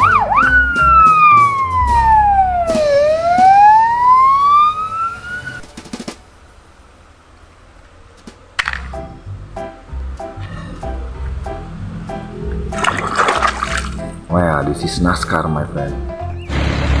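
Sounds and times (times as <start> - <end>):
toy police siren: 0.0 - 5.6
clicks: 7.8 - 9.1.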